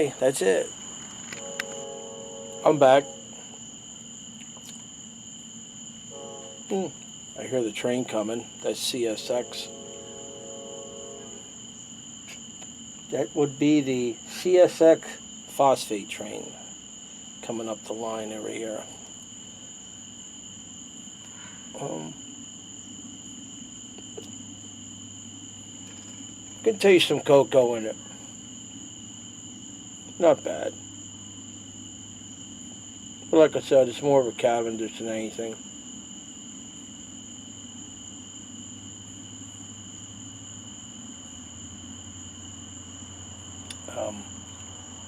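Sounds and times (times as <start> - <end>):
distant freight train rumble: 0.0 - 3.7, 6.0 - 11.7
crickets chirping: 0.0 - 45.0
night insects trilling: 0.0 - 45.0.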